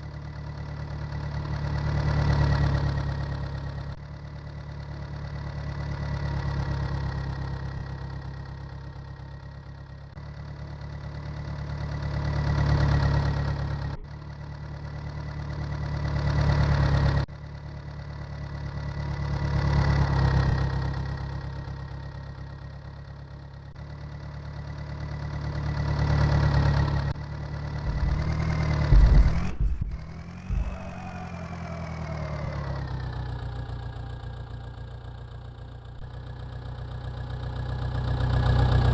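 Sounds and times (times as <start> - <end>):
engine idling: 0.0 - 38.9
low thumps: 27.9 - 31.4.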